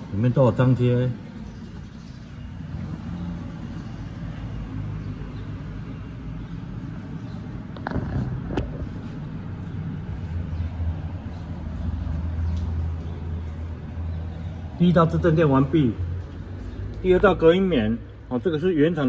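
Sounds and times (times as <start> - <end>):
low mechanical rumble and hum: 1.3 - 14.9.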